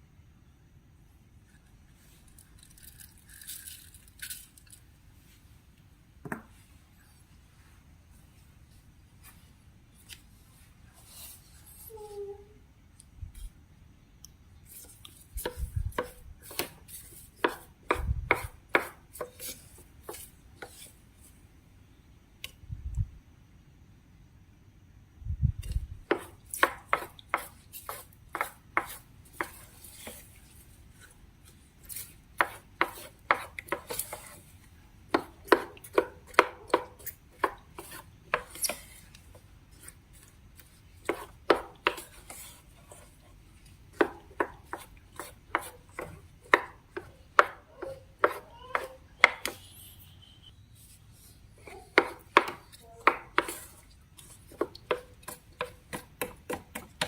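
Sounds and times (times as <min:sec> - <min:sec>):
utensil tapping hard surface: 0:26.1 - 0:30.2, 0:32.4 - 0:34.4, 0:35.1 - 0:38.8, 0:41.0 - 0:42.5, 0:43.9 - 0:49.6, 0:51.7 - 0:57.0.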